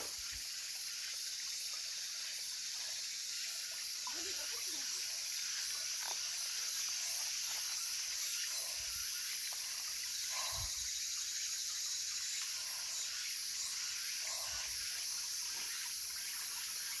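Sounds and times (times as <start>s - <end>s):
stream trickling over rocks: 0.0s - 10.2s.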